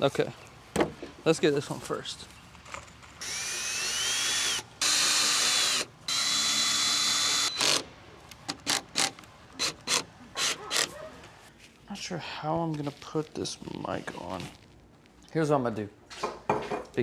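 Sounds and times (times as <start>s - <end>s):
power drill whining: 3.2s - 7.9s, 8.5s - 10.9s.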